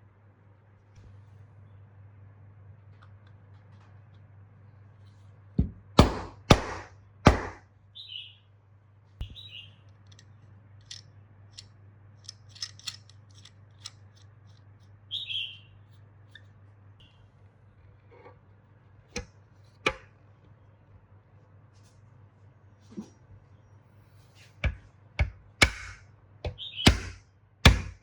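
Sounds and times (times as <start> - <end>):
metal tool parts clicking: 10.0 - 14.9
loud sharp ringing knocks: 26.9 - 28.0.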